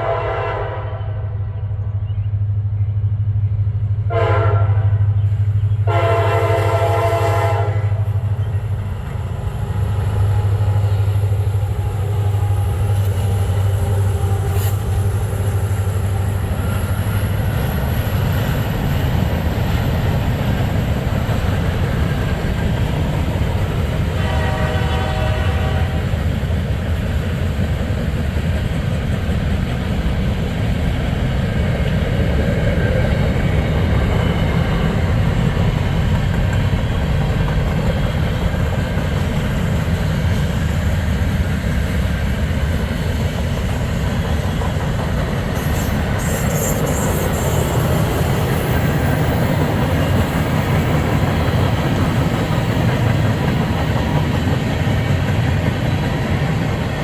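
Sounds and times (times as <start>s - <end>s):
locomotive horn blasts: 0.0s - 1.4s, 4.1s - 5.0s, 5.8s - 8.1s, 24.1s - 26.0s
freight cars rumbling over rails: 1.5s - 57.0s.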